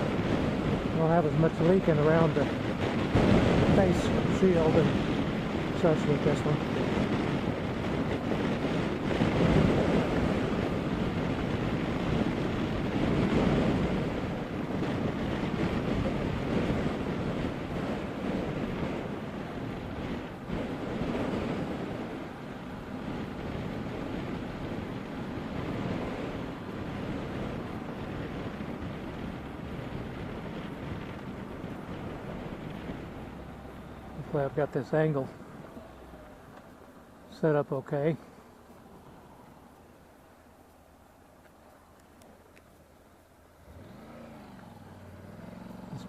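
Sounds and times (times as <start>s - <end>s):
wind rushing over camera: 0.0s - 46.0s.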